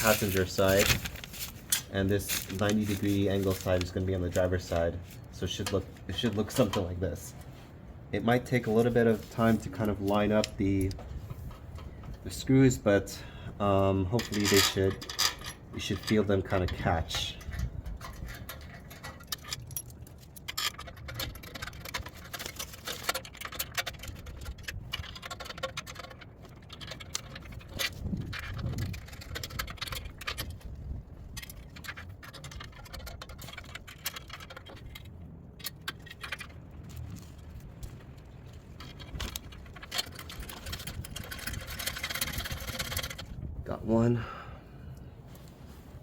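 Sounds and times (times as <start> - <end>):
screws clinking on metal: 14.0 - 30.3.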